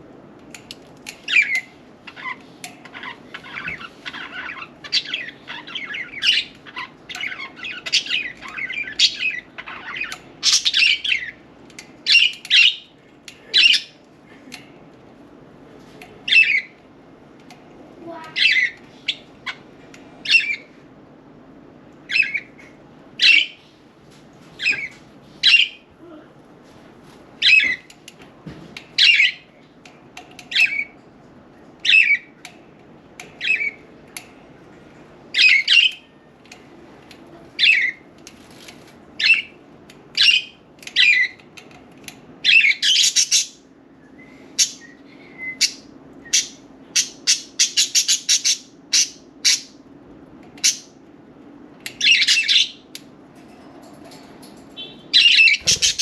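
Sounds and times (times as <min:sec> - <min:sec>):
budgerigars chirping and squawking: 0:01.2 - 0:11.4, 0:22.1 - 0:22.6, 0:42.4 - 0:43.6, 0:45.6 - 0:49.8, 0:51.9 - 0:52.8, 0:54.8 - 0:56.0.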